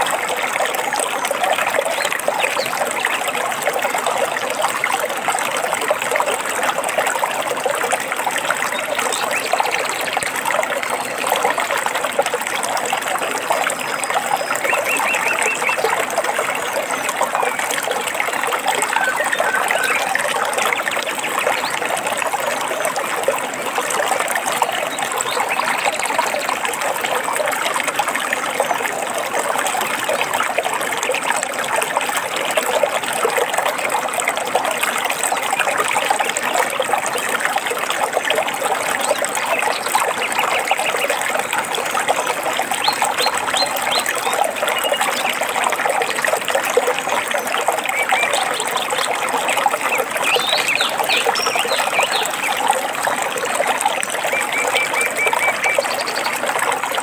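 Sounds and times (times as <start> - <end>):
stream water over rocks: 0.0 - 57.0.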